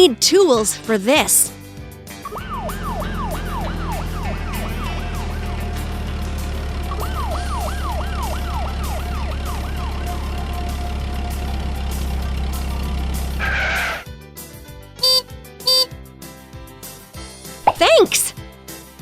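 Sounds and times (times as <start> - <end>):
electronic siren whooping: 2.2 - 5.5, 6.9 - 10.5.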